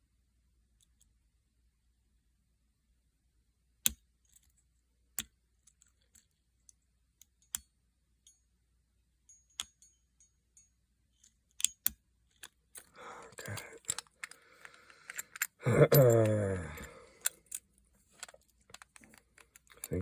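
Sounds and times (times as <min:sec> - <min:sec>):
padlock pin clicks: 0:11.5 - 0:17.6.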